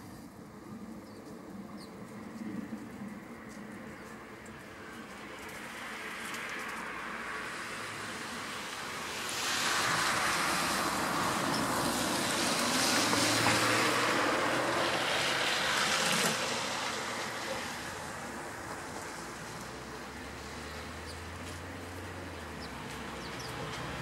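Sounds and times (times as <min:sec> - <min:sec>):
passing vehicle rushing: 0:05.7 - 0:24.0.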